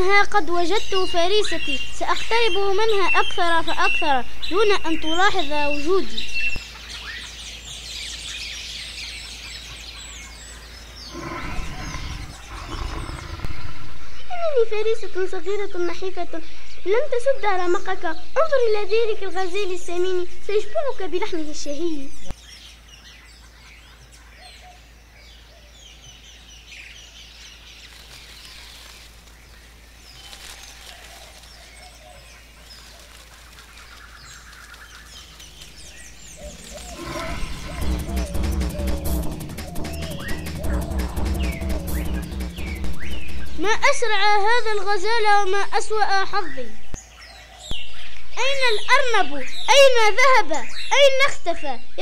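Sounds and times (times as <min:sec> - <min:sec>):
birds chirping: 0:00.0 - 0:52.0
low rough sound: 0:11.1 - 0:14.3, 0:35.5 - 0:43.8.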